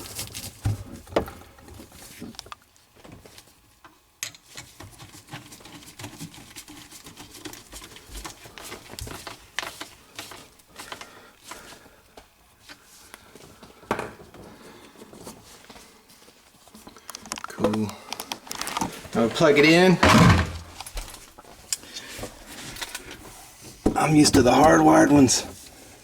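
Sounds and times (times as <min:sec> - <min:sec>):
sharp knock: 0:20.0 - 0:20.8.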